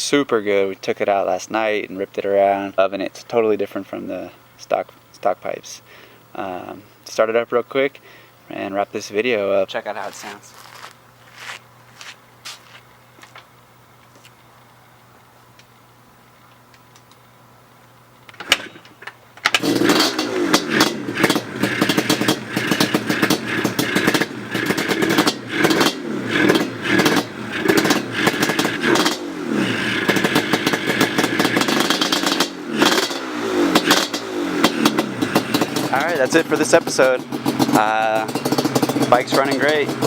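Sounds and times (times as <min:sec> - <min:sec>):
engine sputtering: 0:19.5 - 0:40.0
two-stroke engine revving: 0:19.5 - 0:40.0.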